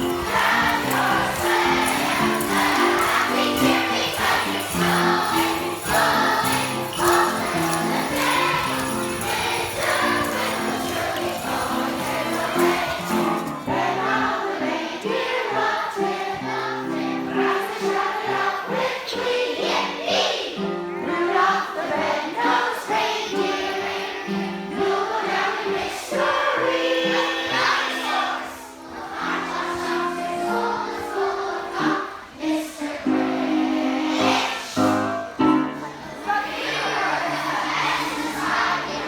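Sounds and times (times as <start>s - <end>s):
jingle bells shaking: 0.0s - 13.9s
christmas music: 0.0s - 20.4s, 21.1s - 39.0s
choir singing: 0.0s - 39.0s.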